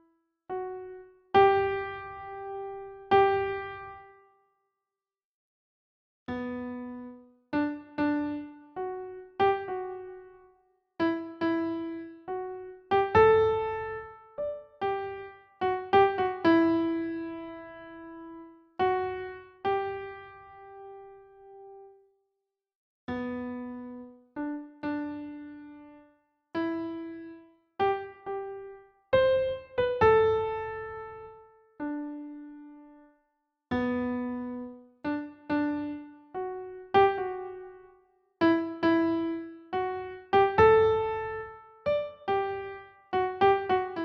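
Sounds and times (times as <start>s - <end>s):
gentle piano-like keyboard melody: 0.0s - 4.5s, 6.3s - 22.1s, 23.1s - 44.0s.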